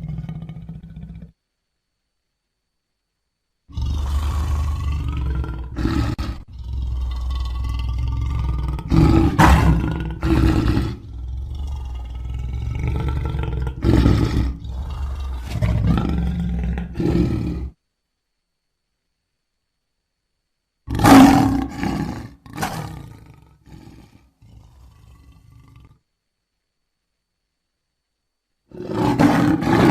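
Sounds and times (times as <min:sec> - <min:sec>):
lion roaring and growling: 0:03.7 - 0:17.8, 0:20.9 - 0:26.0, 0:28.7 - 0:29.9.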